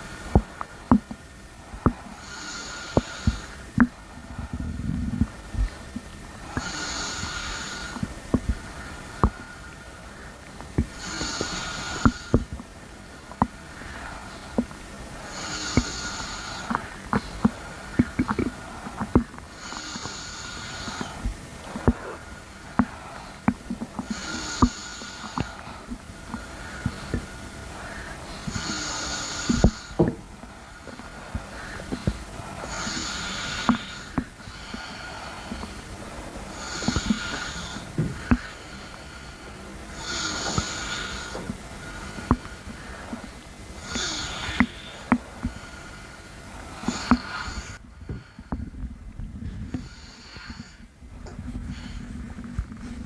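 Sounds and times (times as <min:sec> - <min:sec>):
rising hiss: 0:00.0 - 0:47.8
long breaths: 0:00.0 - 0:53.0
stomach gurgling: 0:00.0 - 0:53.0.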